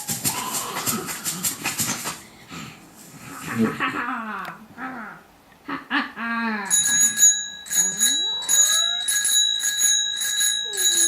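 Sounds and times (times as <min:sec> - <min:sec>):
bicycle bell ringing: 0:06.7 - 0:11.0.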